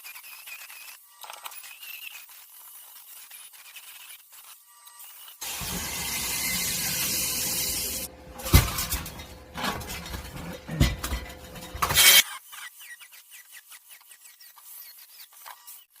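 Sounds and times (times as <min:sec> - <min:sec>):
metal grinding hiss: 0:05.4 - 0:08.6
sharp metal clanks: 0:08.3 - 0:12.2.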